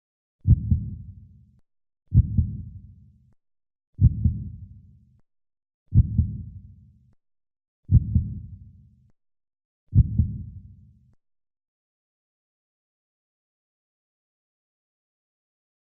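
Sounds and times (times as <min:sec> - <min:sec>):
heartbeat-like double thumps: 0:00.4 - 0:01.0, 0:02.1 - 0:02.7, 0:04.0 - 0:04.6, 0:05.9 - 0:06.5, 0:07.9 - 0:08.4, 0:09.9 - 0:10.6.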